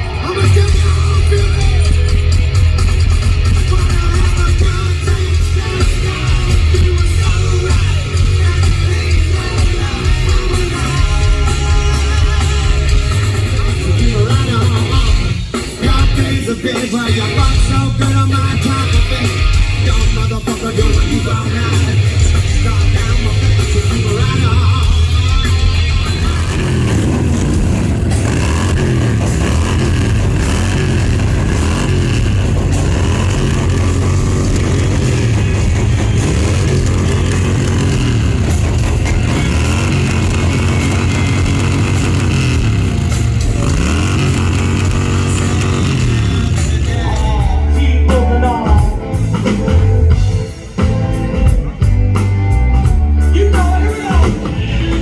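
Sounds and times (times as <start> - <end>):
drum kit: 0.0 - 55.0
electric guitar: 0.0 - 55.0
motorcycle engines revving: 0.0 - 55.0
person singing: 3.5 - 43.0, 43.6 - 50.1, 52.9 - 55.0
low rumble: 19.8 - 50.5.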